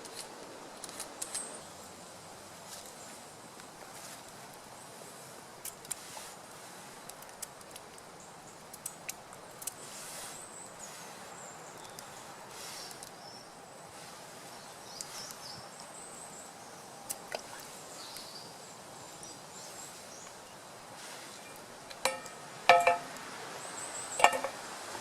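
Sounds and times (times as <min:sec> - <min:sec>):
metal cookware clinks: 0:22.1 - 0:23.1, 0:24.2 - 0:24.6.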